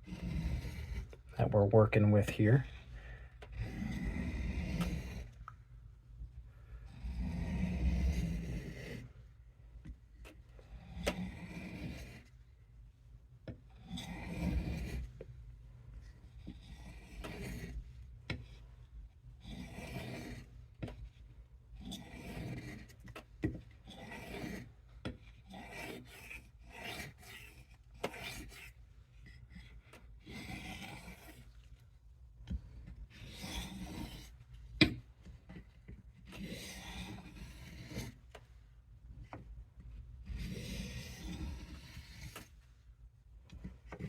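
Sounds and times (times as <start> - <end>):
knife rasping on sharpening stone: 0.1 - 1.2, 10.8 - 12.2, 19.4 - 20.5, 21.8 - 22.9, 23.9 - 24.7, 25.5 - 28.7, 30.3 - 31.4, 33.2 - 34.3, 36.3 - 38.1.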